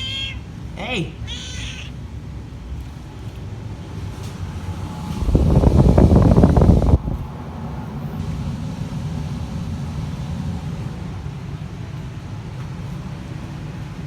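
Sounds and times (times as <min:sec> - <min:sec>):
furnace blower fan rumble: 0:00.0 - 0:14.0
loud rush on microphone: 0:04.4 - 0:08.2.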